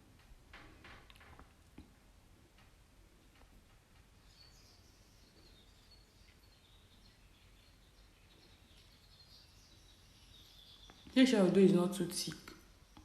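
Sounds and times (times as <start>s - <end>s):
faint high chirping: 4.2s - 11.3s.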